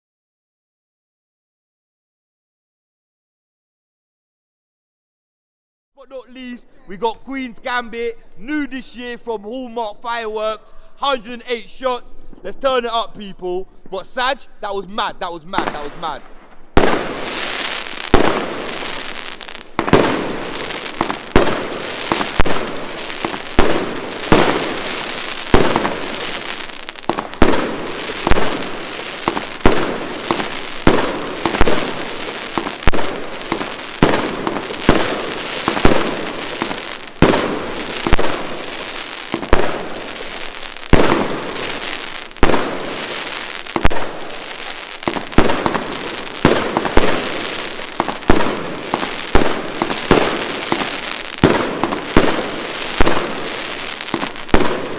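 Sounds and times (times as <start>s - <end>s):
firework bangs: 15.5s - 54.9s
firework crackling hiss: 16.7s - 54.9s.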